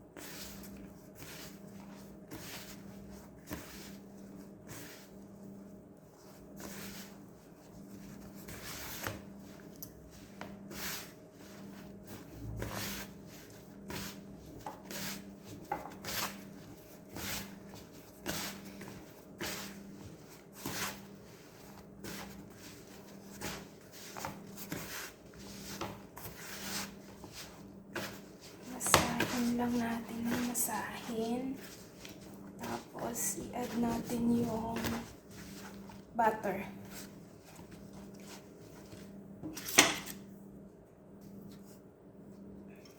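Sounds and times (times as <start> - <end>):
dough squishing by hand: 0.0 - 42.9.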